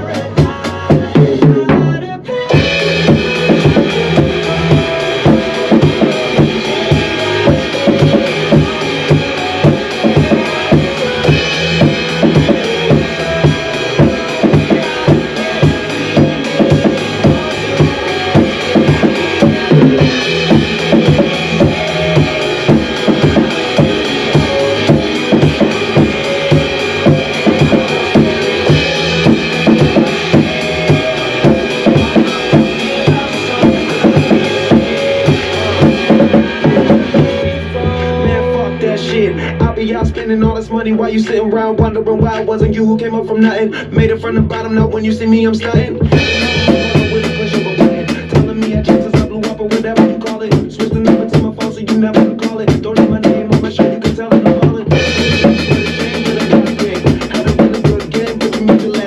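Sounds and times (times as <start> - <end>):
acoustic drum kit playing: 0.0 - 42.9, 44.0 - 59.0
pop backing track: 0.0 - 59.0.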